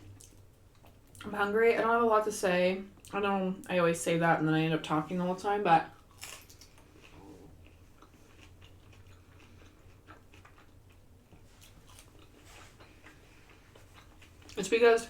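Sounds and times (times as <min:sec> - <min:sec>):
person chewing and crunching food: 0:00.1 - 0:01.3, 0:05.9 - 0:14.6.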